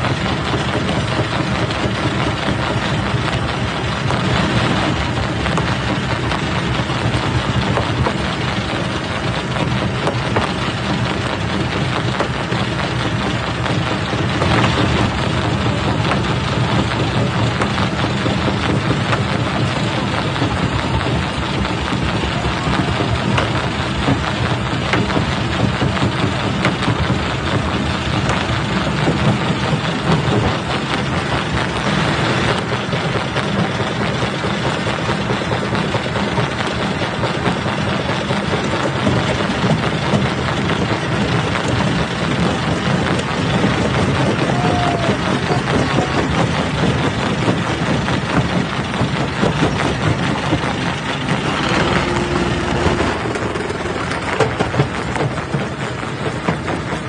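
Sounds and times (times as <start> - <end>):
jaw crusher grinding rock: 0.0 - 57.0.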